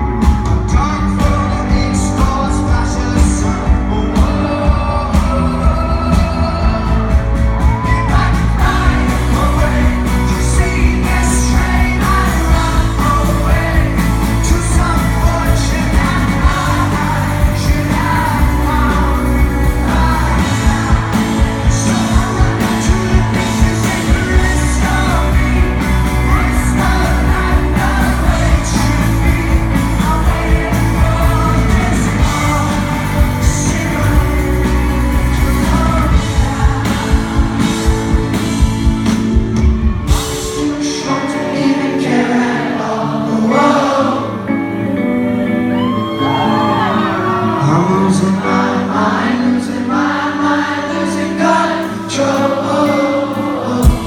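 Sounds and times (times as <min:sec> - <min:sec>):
heavy bass: 0:00.0 - 0:41.2, 0:53.7 - 0:54.0
electric guitars: 0:00.0 - 0:54.0
lead vocal singing: 0:00.0 - 0:54.0.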